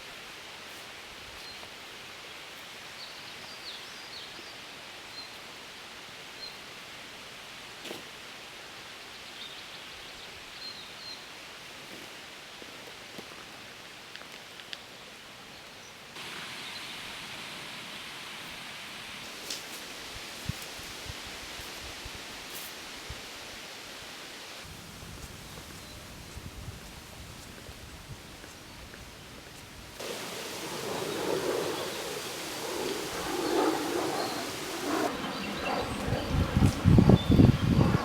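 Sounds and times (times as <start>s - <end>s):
outdoor background hiss: 0.0s - 36.0s
faint bird chirps: 30.0s - 36.3s.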